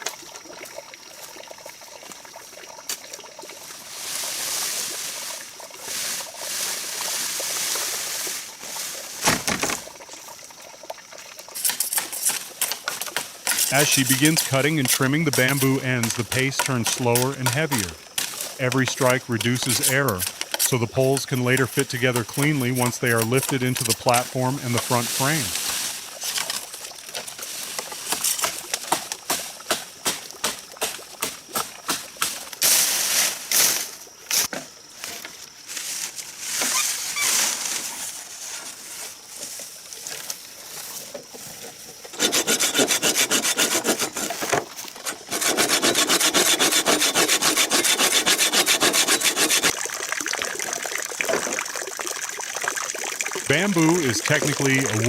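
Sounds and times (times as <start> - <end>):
sawing through bamboo: 11.7 - 18.4, 19.0 - 20.8, 21.4 - 25.7, 42.1 - 49.8.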